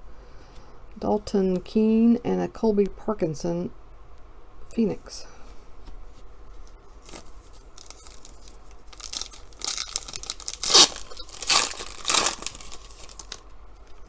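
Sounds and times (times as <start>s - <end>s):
wrapper tearing and crinkling: 7.1s - 13.4s
loud sharp wrapper rips: 7.8s - 13.4s.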